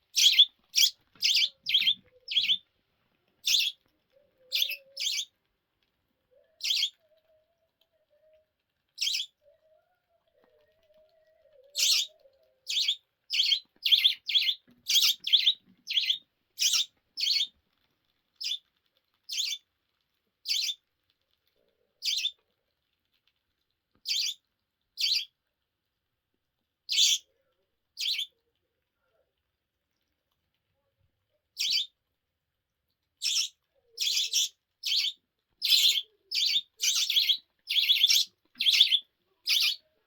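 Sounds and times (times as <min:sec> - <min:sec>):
budgerigar chirping: 0:00.2 - 0:02.6, 0:03.4 - 0:03.8, 0:04.5 - 0:05.3, 0:06.6 - 0:06.9, 0:09.0 - 0:09.4, 0:11.8 - 0:12.1, 0:12.7 - 0:17.5, 0:18.4 - 0:18.6, 0:19.3 - 0:19.6, 0:20.5 - 0:20.8, 0:22.0 - 0:22.4, 0:24.1 - 0:24.4, 0:25.0 - 0:25.3, 0:26.9 - 0:27.2, 0:28.0 - 0:28.3, 0:31.6 - 0:31.9, 0:33.2 - 0:39.8.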